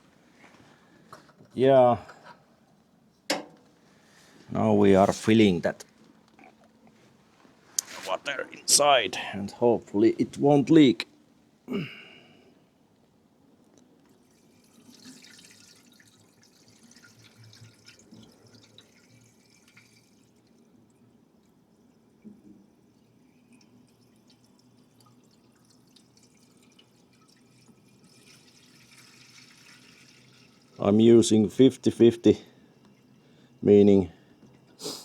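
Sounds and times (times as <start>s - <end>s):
liquid trickling into radiator: 14.0s - 31.6s
scattered drips: 23.2s - 30.8s.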